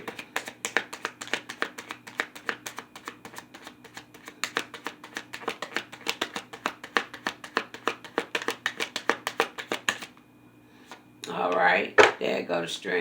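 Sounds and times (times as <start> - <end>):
cards being shuffled: 0.0 - 10.1.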